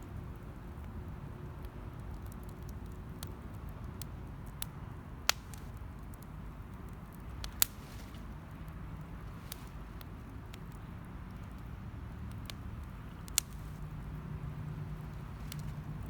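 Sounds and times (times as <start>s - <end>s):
campfire burning and crackling: 0.0s - 16.0s
sharp fire pops: 5.3s - 11.4s, 12.2s - 13.9s, 14.8s - 16.0s.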